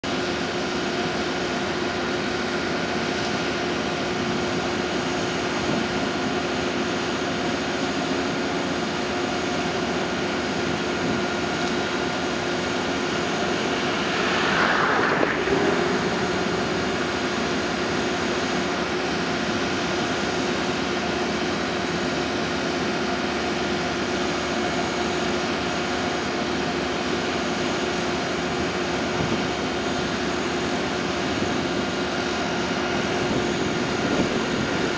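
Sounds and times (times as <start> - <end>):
diesel locomotive engine droning: 0.1 - 34.9.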